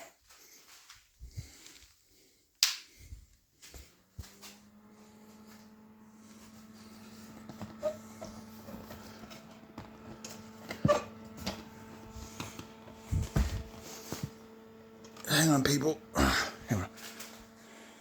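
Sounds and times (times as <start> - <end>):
cooling fan motor humming: 3.6 - 18.0.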